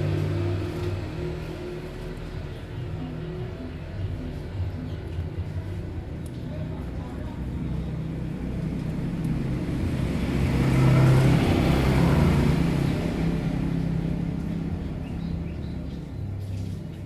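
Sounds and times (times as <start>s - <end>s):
vehicle passing by: 0.0s - 3.2s, 7.4s - 17.0s
low engine hum: 0.0s - 17.0s.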